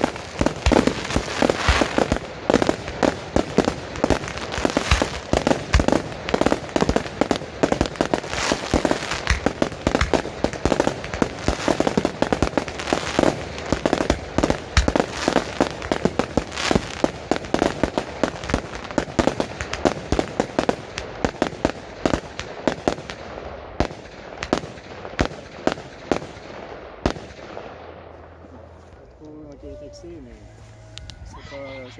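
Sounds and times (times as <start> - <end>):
fireworks bangs and crackling: 0.0 - 29.0.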